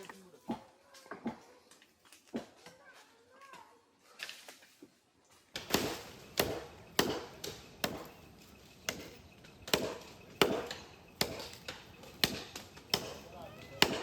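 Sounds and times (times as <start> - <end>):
blade chopping wood: 5.6 - 14.0.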